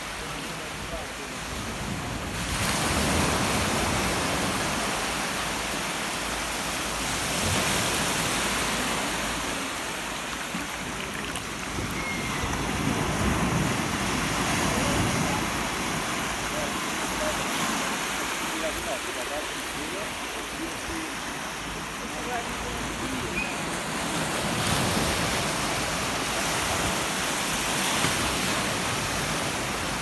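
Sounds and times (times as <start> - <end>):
waves washing onto shore: 0.0 - 30.0.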